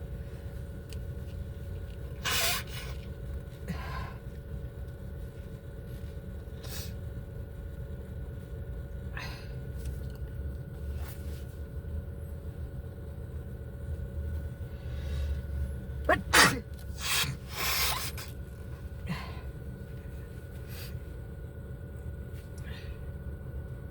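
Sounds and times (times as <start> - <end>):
low rumble of car cabin: 0.0 - 23.9
person sneezing: 16.1 - 18.2.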